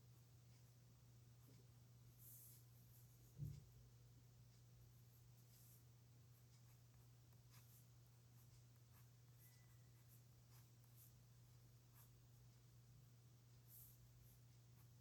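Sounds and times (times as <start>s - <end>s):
pen scratching on paper: 5.1s - 11.2s, 11.8s - 12.3s, 13.6s - 15.0s.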